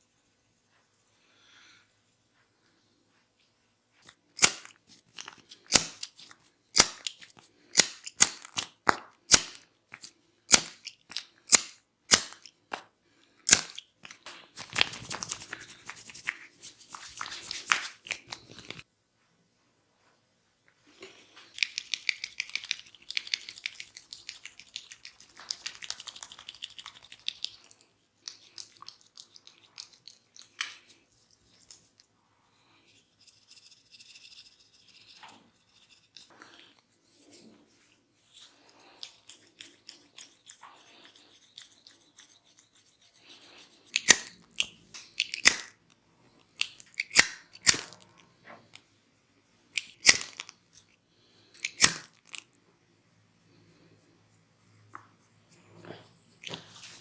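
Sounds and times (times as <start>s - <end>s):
crackly rubbing and scratching: 14.0s - 18.8s.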